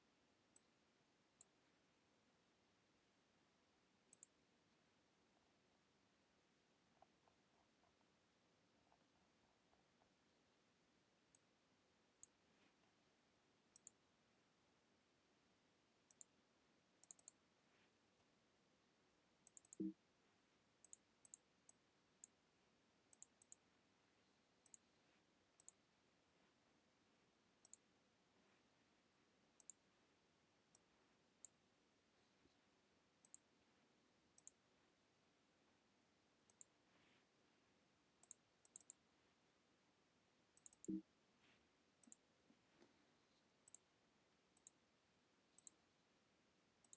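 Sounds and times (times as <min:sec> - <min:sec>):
computer mouse clicking: 0:04.1 - 0:04.4, 0:13.8 - 0:14.0, 0:16.1 - 0:16.3, 0:17.0 - 0:17.4, 0:19.4 - 0:20.0, 0:20.8 - 0:22.4, 0:23.1 - 0:23.6, 0:24.6 - 0:24.8, 0:25.6 - 0:25.8, 0:27.6 - 0:27.8, 0:29.6 - 0:29.8, 0:33.2 - 0:33.5, 0:34.4 - 0:34.6, 0:36.5 - 0:36.8, 0:38.2 - 0:39.0, 0:40.6 - 0:41.0, 0:42.0 - 0:42.2, 0:44.6 - 0:44.8, 0:45.5 - 0:45.8.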